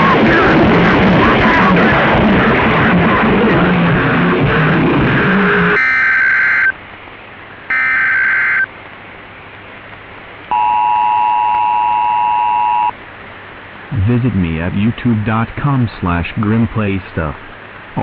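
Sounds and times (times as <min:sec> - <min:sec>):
steady two-tone attention signal: 0:05.4 - 0:06.7, 0:07.7 - 0:08.7, 0:10.5 - 0:13.0
digital data tone bursts: 0:05.5 - 0:06.7, 0:07.7 - 0:08.7.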